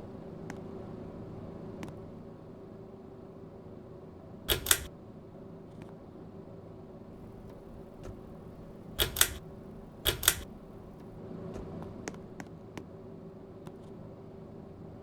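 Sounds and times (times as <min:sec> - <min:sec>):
ceiling fan motor hum: 0:04.5 - 0:04.9, 0:07.2 - 0:12.1
loud double clicks: 0:04.5 - 0:04.9, 0:07.2 - 0:11.2
light ticks: 0:07.2 - 0:11.1.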